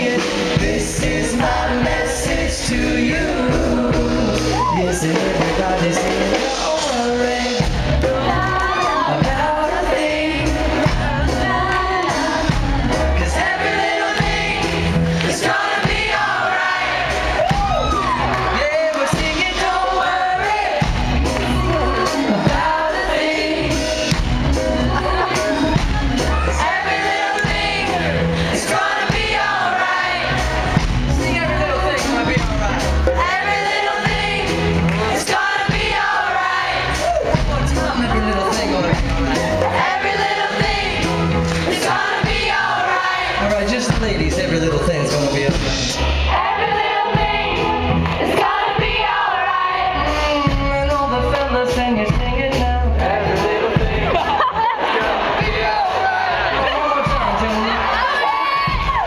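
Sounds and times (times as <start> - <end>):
several voices singing together: 0.0 - 44.2, 45.0 - 59.0
faint crowd: 0.0 - 59.0
live band playing pop song: 0.0 - 59.0
steady bass line: 0.0 - 59.0
person singing: 49.9 - 54.5.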